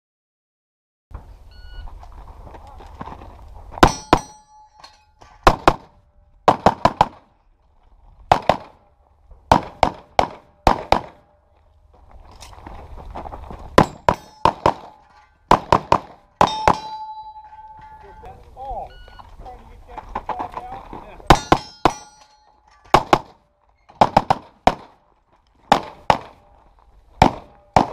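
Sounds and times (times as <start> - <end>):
metallic ring of steel targets: 3.8 - 5.6, 13.8 - 19.1, 21.3 - 23.1
pistol shots: 5.4 - 5.9, 6.5 - 7.3, 8.3 - 8.8, 9.5 - 11.3, 13.8 - 17.1, 22.9 - 23.4, 24.0 - 25.0, 25.7 - 26.4, 27.2 - 27.9.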